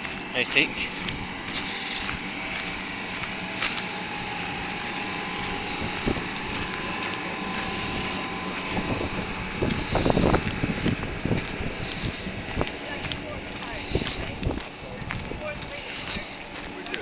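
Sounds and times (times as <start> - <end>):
faint hum: 0.0 - 17.0
footsteps crunching on gravel: 0.0 - 17.0.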